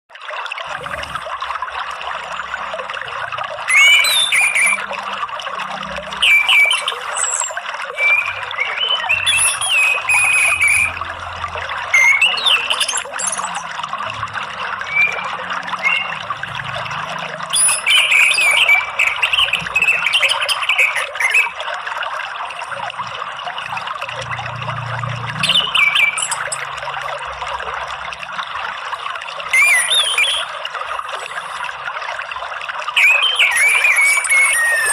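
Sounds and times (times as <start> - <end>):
running water: 0.1 - 34.9.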